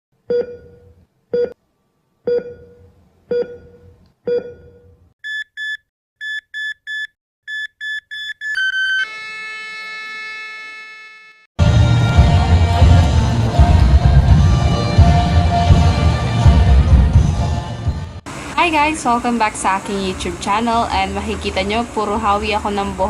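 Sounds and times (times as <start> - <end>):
electronic beeps: 2.3 - 9.1.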